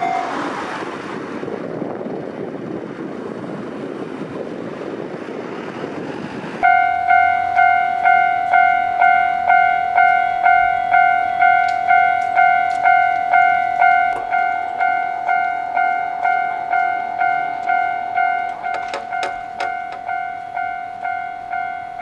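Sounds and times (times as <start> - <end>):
railroad crossing warning bell: 0.0 - 1.2, 6.6 - 22.0.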